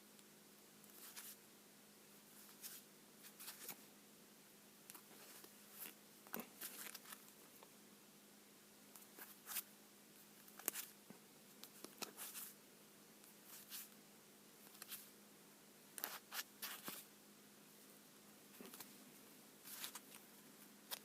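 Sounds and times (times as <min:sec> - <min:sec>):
low steady hum: 0:00.0 - 0:21.0
cards rustling and clicking: 0:04.9 - 0:07.3, 0:19.7 - 0:20.2.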